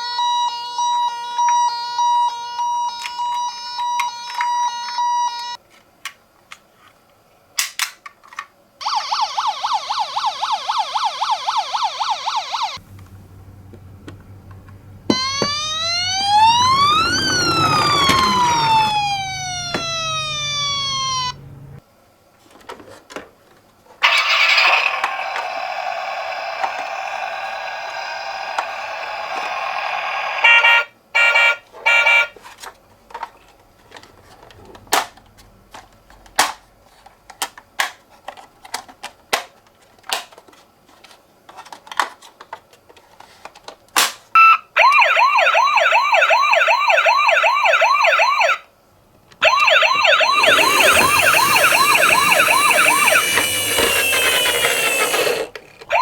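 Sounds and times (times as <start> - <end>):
toy electronic siren: 0.0 - 5.6, 8.8 - 12.8, 15.1 - 21.8, 24.0 - 32.4, 44.4 - 48.7, 49.4 - 56.0
up-and-down wailing siren: 8.8 - 21.8, 44.8 - 48.7, 49.4 - 56.0.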